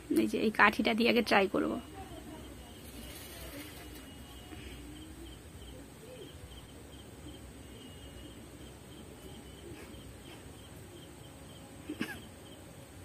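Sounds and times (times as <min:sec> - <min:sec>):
low background hiss: 0:00.0 - 0:13.0
insect chirping: 0:01.7 - 0:13.0.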